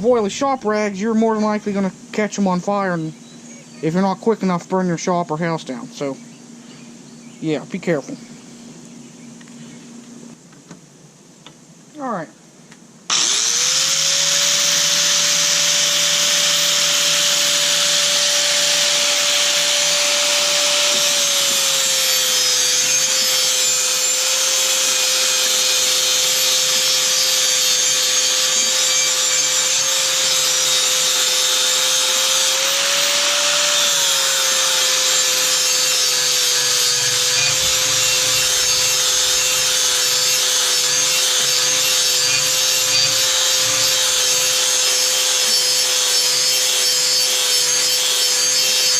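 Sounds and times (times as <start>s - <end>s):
angle grinder grinding steel: 13.1s - 48.9s.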